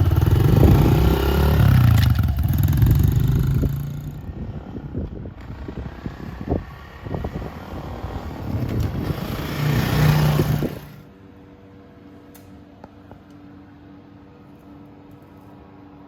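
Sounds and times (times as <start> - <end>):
dirt bike engine revving: 0.0 - 4.1, 8.6 - 11.0
wind rushing on microphone: 0.0 - 11.0.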